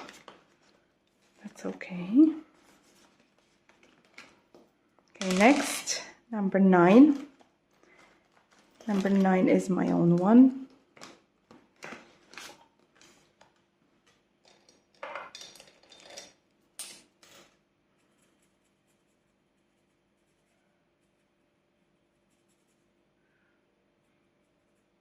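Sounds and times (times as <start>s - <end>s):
paper and plastic rustling: 0.0s - 1.8s, 2.5s - 6.1s, 6.8s - 13.6s.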